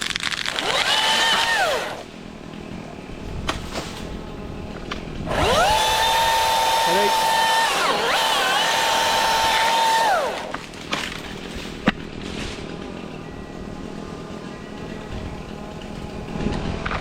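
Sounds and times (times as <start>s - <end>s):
battery chainsaw whine: 0.4s - 2.1s, 5.2s - 10.8s.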